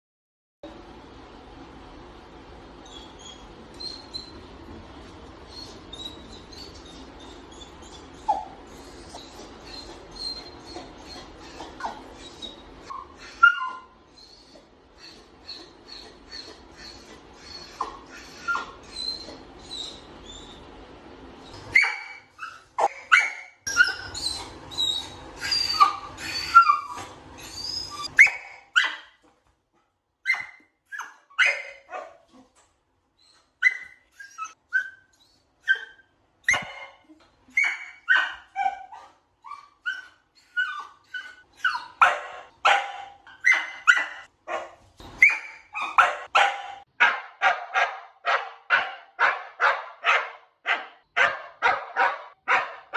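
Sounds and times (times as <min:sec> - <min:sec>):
dog whining and yipping: 0:02.8 - 0:20.8, 0:21.4 - 0:29.1, 0:30.3 - 0:32.4, 0:33.2 - 0:46.8
dog barking: 0:31.4 - 0:32.3, 0:37.6 - 0:39.1, 0:41.6 - 0:52.9.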